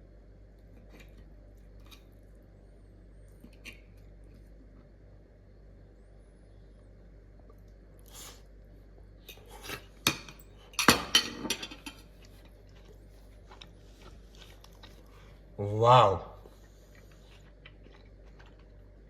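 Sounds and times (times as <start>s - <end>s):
cutlery clinking on a dish: 10.1s - 12.0s.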